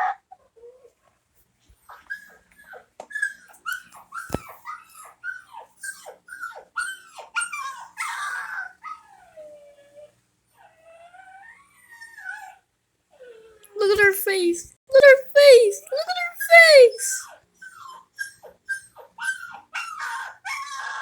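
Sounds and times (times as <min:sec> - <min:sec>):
puppy whining: 0:01.8 - 0:21.0
puppy yelping: 0:01.9 - 0:09.6, 0:15.0 - 0:21.0.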